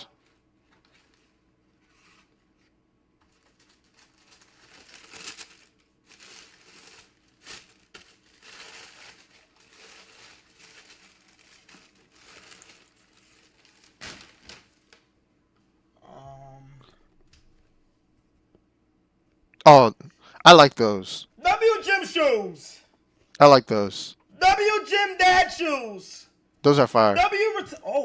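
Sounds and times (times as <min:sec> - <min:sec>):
paper packaging crinkling: 0:00.2 - 0:15.1
paper tearing: 0:03.4 - 0:14.7.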